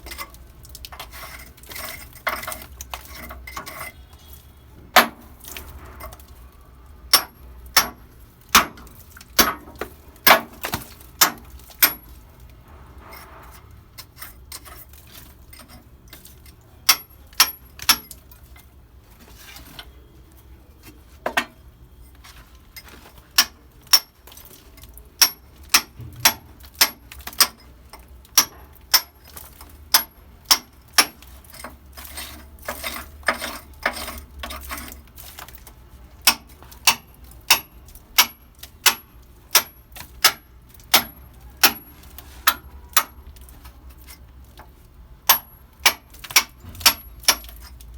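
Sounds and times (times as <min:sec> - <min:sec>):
metal striking metal: 0:25.2 - 0:27.0.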